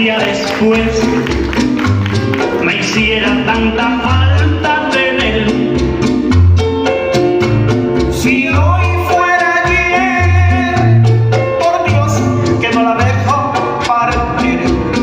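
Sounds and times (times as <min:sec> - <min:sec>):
bass line: 0:00.0 - 0:15.0
man singing with a band: 0:08.2 - 0:11.0.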